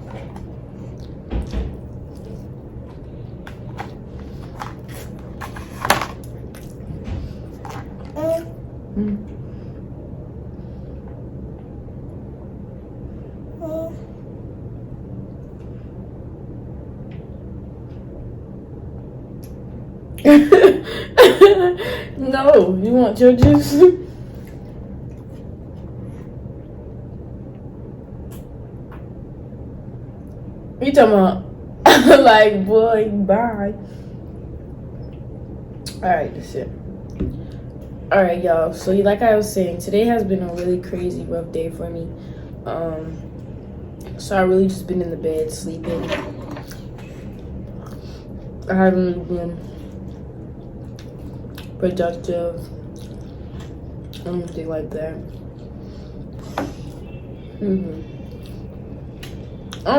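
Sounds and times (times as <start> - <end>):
low background rumble: 0.0 - 59.9
steady low hum: 0.0 - 59.9
chewing: 46.6 - 48.2, 49.8 - 51.8, 52.8 - 54.6, 58.2 - 59.9.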